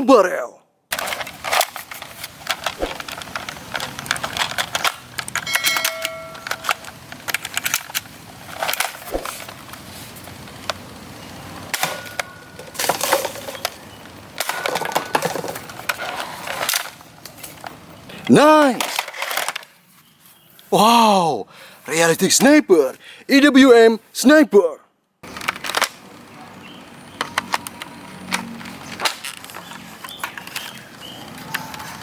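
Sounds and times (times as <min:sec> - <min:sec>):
plastic toy blaster clicking and rattling: 0:00.9 - 0:09.6, 0:18.8 - 0:19.7.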